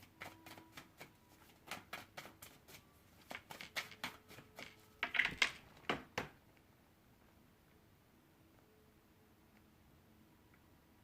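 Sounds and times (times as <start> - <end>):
cards being shuffled: 0.0 - 5.6.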